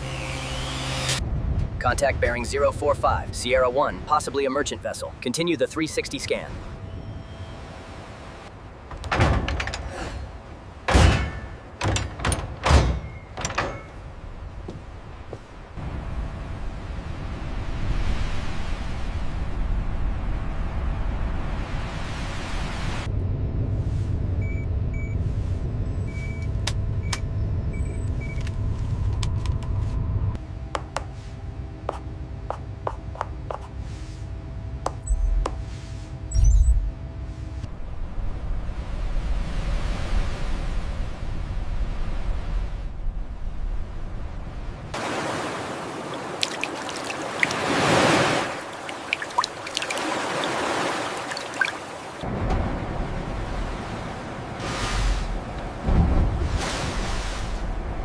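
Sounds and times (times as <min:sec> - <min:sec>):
low mechanical rumble: 0:23.1 - 0:45.0, 0:52.0 - 0:58.0
high electronic beeps: 0:35.0 - 0:35.4.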